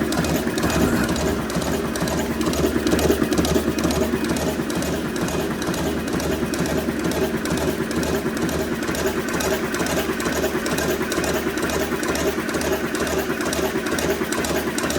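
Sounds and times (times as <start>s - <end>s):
machine clattering: 0.5s - 3.3s.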